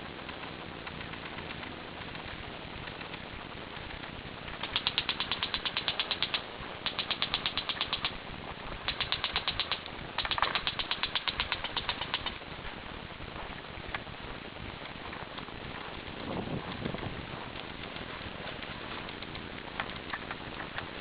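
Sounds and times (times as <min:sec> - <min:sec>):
airsoft gun firing full-auto: 0:04.6 - 0:08.2, 0:08.8 - 0:12.4.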